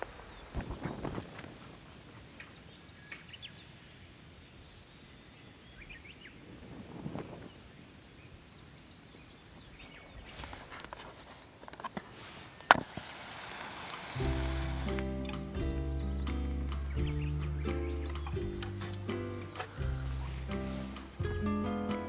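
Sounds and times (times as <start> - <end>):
faint outdoor background: 0.0 - 22.0
bird chirps and calls: 14.2 - 21.5.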